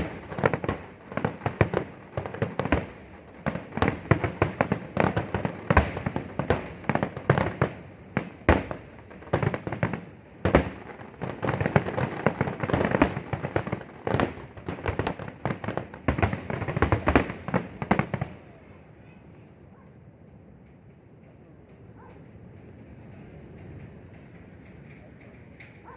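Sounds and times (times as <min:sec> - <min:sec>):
fireworks banging: 0:00.0 - 0:18.8
faint background noise: 0:00.0 - 0:25.9.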